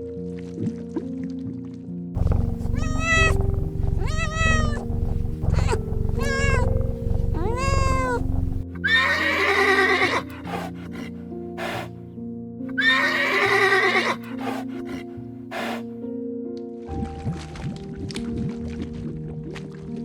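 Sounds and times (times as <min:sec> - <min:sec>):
animal calling: 0:02.2 - 0:10.7, 0:15.5 - 0:15.8.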